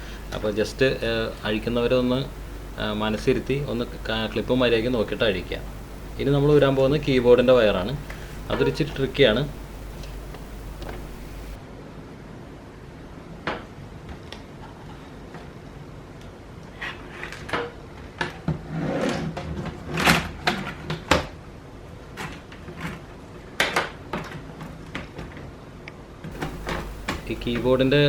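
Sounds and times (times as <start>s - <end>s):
plastic clicks and knocks: 26.4s - 27.7s.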